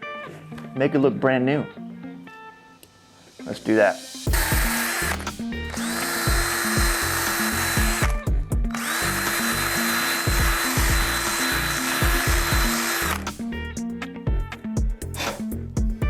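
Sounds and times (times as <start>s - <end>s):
background music with steady beat: 1.7s - 16.0s
power drill spinning wire brush: 4.3s - 13.4s.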